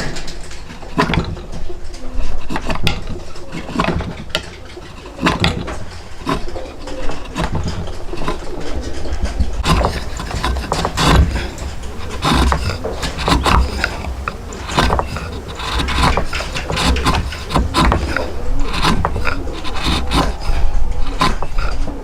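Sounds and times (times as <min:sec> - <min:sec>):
hand tools scraping wood: 0:00.0 - 0:22.0
sharp knocks: 0:09.6 - 0:20.6.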